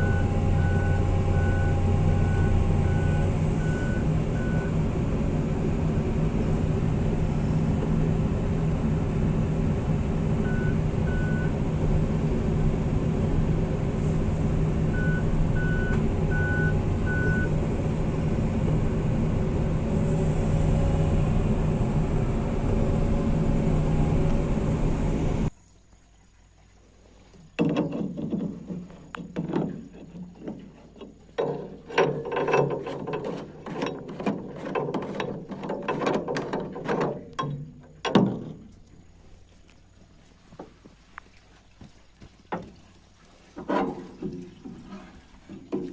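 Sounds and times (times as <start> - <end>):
excavator diesel engine running: 0.0 - 25.5.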